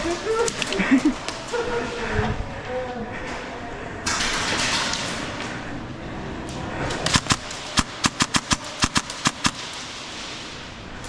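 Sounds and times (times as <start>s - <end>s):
airsoft gun shots: 7.0s - 9.8s.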